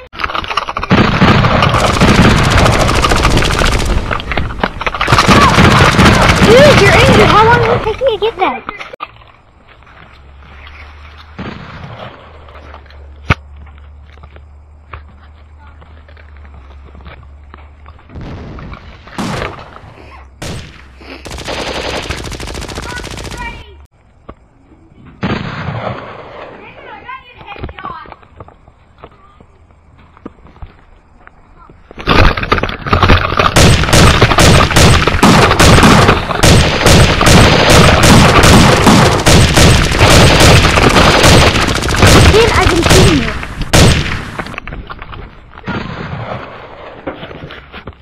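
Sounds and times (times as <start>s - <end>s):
toy blasters firing: 33.6s - 44.2s.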